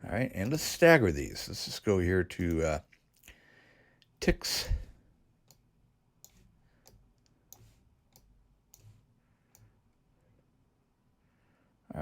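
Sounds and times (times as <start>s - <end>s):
computer mouse clicks: 5.4s - 9.7s.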